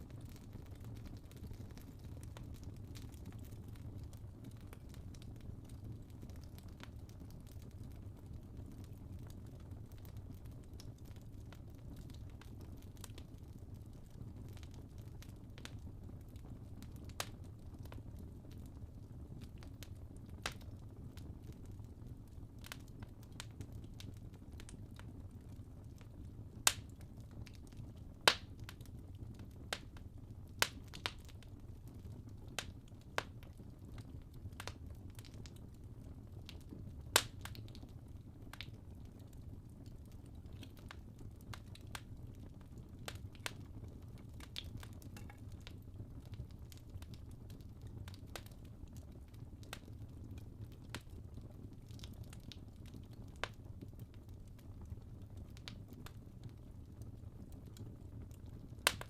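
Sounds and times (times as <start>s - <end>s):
wood fire crackling: 0.0s - 59.0s
sharp fire pops: 28.3s - 28.5s.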